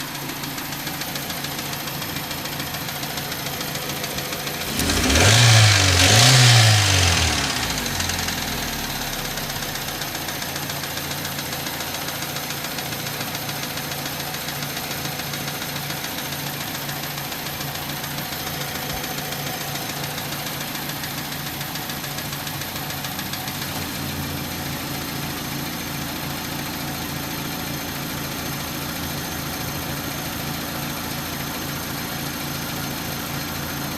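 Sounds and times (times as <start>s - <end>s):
car engine idling and revving: 0.0s - 33.9s
engine ticking: 0.0s - 33.9s.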